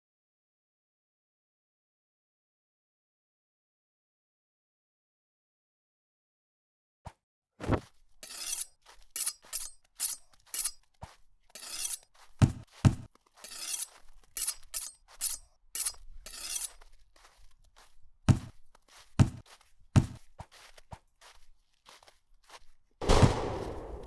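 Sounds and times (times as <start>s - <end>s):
heavy low thuds: 23.0s - 24.0s.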